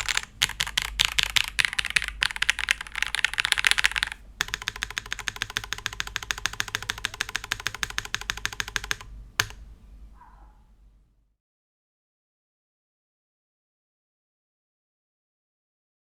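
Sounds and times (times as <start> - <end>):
fast mechanical keyboard typing: 0.0 - 9.6.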